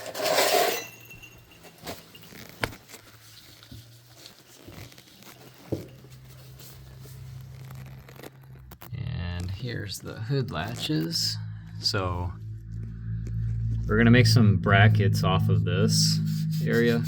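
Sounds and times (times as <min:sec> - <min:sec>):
faint handling and rustling: 0:00.1 - 0:13.9
low steady hum: 0:08.8 - 0:17.0.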